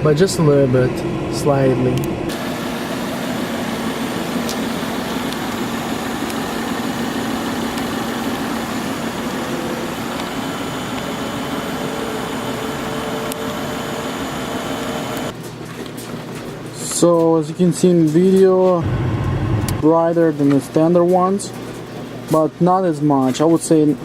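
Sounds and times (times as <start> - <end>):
car engine idling: 18.8 - 19.8.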